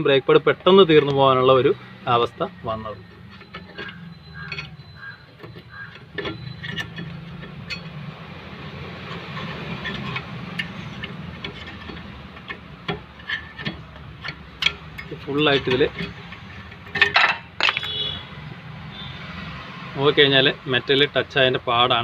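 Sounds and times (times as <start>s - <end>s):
tools and parts clicking: 2.4s - 18.3s.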